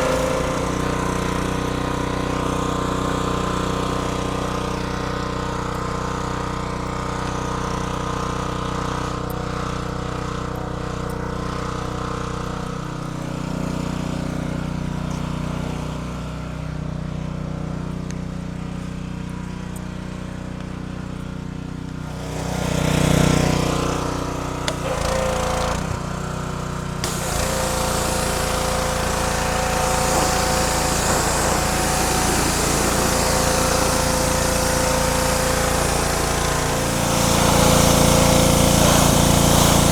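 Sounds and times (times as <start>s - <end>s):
small engine running: 0.0s - 17.8s, 18.4s - 39.9s
water spray hissing: 26.8s - 39.9s.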